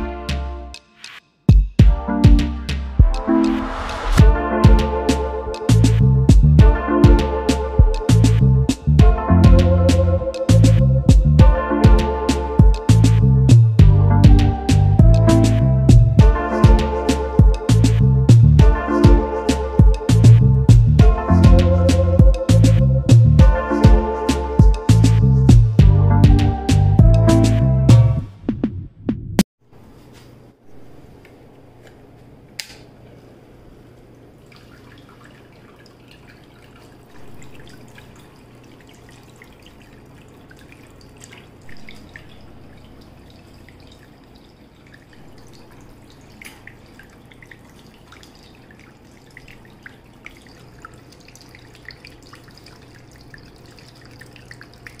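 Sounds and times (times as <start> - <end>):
water pump hum: 3.0 - 28.2, 30.7 - 55.0
water trickling and dripping: 3.2 - 26.4, 33.9 - 55.0.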